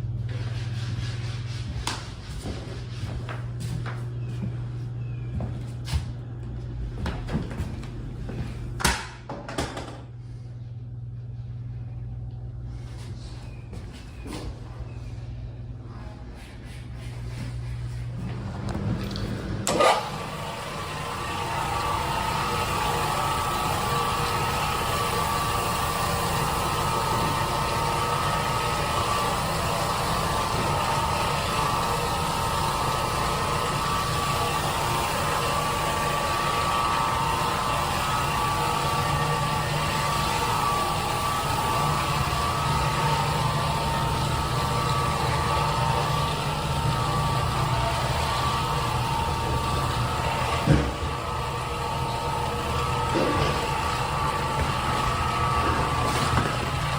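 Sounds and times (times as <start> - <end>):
mid-pitched machine whine: 0.0 - 56.9
floor cleaning machine humming: 12.7 - 56.9.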